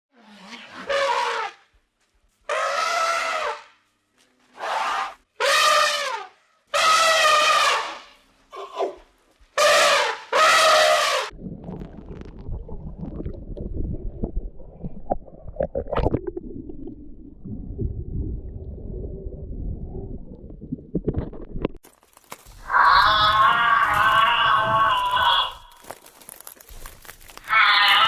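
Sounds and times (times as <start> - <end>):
animal calls: 22.7 - 25.8, 27.4 - 28.0.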